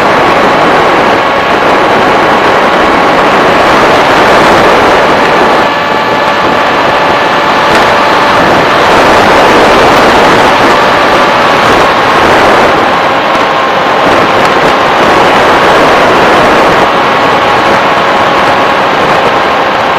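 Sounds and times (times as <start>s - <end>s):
model aircraft motor whine: 0.0s - 19.9s
rush of air noise: 0.0s - 19.9s.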